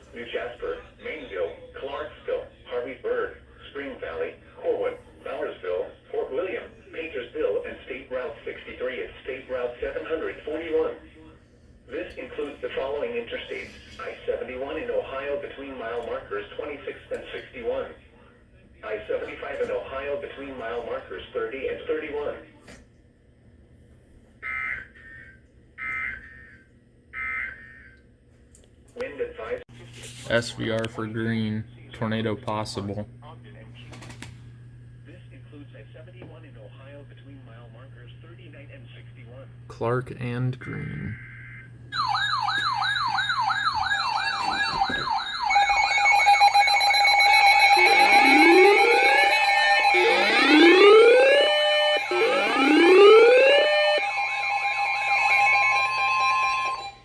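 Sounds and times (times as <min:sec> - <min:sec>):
warning sirens: 0:24.4 - 0:28.1, 0:41.2 - 0:57.0
buzzing digital data tones: 0:45.2 - 0:56.9.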